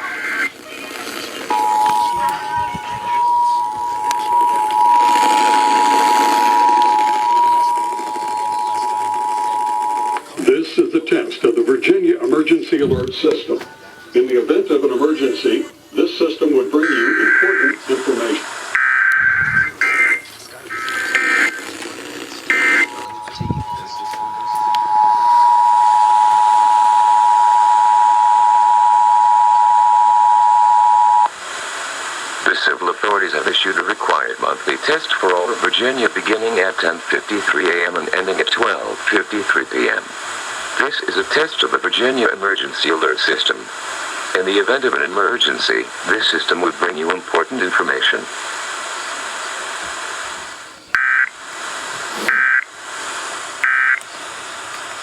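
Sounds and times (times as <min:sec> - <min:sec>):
warbling data bursts: 0:00.0 - 0:11.3, 0:15.2 - 0:27.2, 0:51.9 - 0:52.8
radio hiss: 0:00.0 - 0:55.0
harsh steady alert tone: 0:01.5 - 0:11.2, 0:16.2 - 0:21.6, 0:22.4 - 0:27.3.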